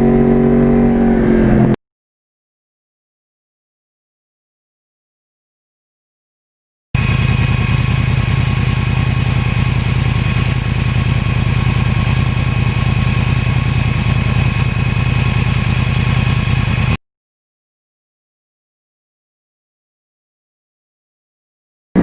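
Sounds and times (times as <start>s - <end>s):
motorcycle engine idling: 7.0s - 17.0s.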